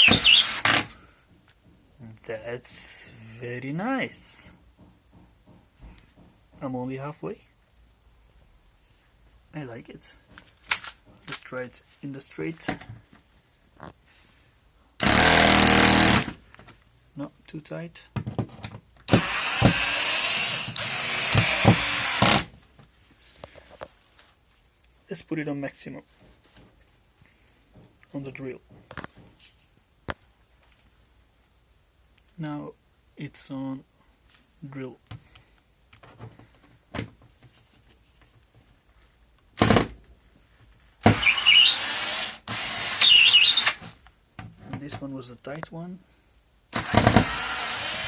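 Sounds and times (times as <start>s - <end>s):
cordless screwdriver driving screw: 0.0s - 0.9s, 15.0s - 16.4s, 19.1s - 22.5s, 41.1s - 43.8s, 46.8s - 48.0s.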